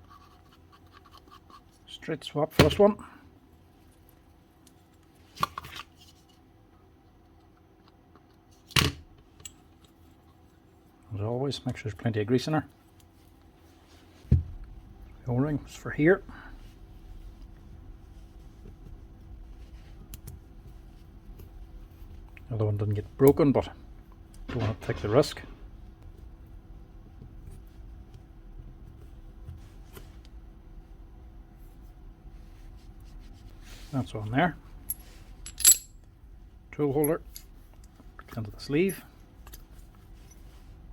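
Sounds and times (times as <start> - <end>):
light rubbing of small parts: 0.0 - 2.1, 31.6 - 36.1.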